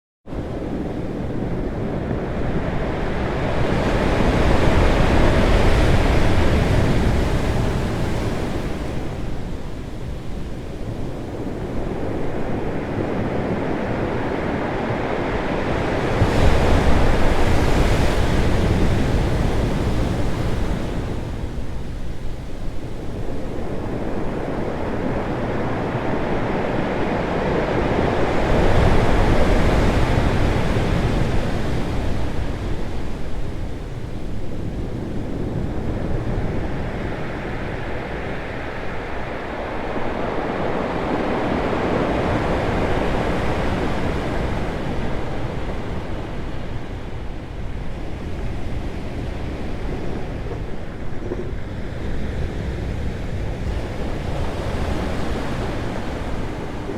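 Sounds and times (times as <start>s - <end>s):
waves crashing on rocks: 15.2s - 21.9s.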